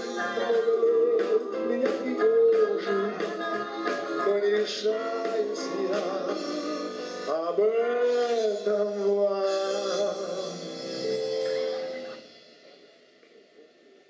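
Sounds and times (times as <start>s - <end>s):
man singing: 0.0s - 11.7s
pop band playing with beat: 0.0s - 12.8s.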